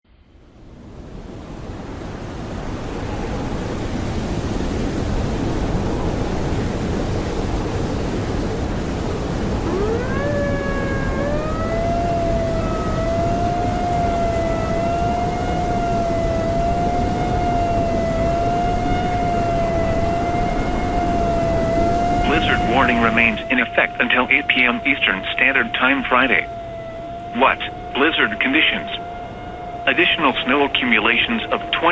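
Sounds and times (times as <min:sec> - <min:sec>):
blizzard wind roaring: 0:00.1 - 0:31.9
warning siren wailing: 0:02.4 - 0:31.9.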